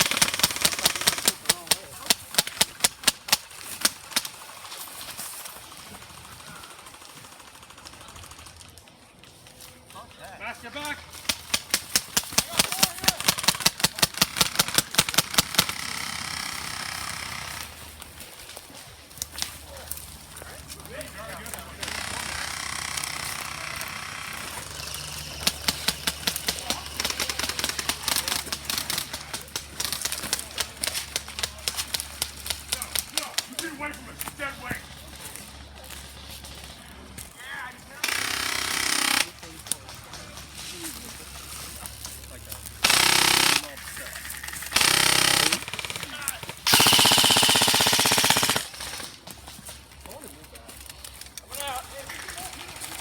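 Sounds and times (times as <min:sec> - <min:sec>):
airsoft guns firing: 0:00.0 - 0:08.5, 0:10.7 - 0:18.6, 0:19.3 - 0:34.8, 0:38.0 - 0:40.2, 0:42.8 - 0:49.4
airsoft gun shots: 0:42.8 - 0:43.8, 0:44.7 - 0:49.0.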